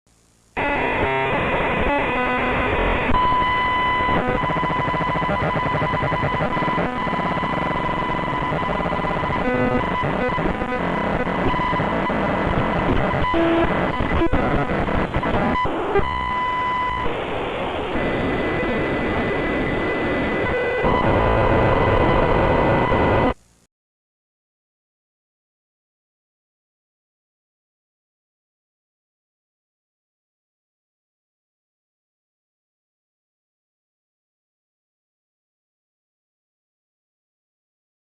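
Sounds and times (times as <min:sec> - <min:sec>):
harsh distorted static: 0:00.1 - 0:23.7.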